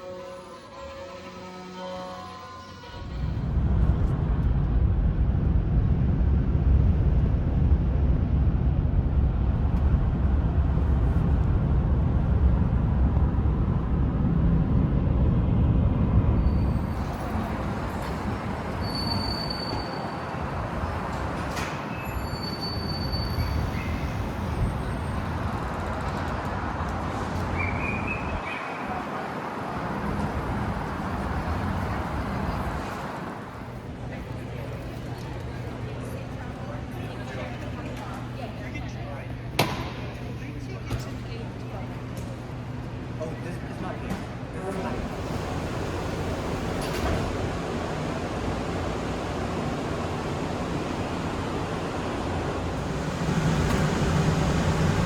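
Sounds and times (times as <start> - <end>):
train rumbling: 2.8 - 38.4, 44.1 - 55.0.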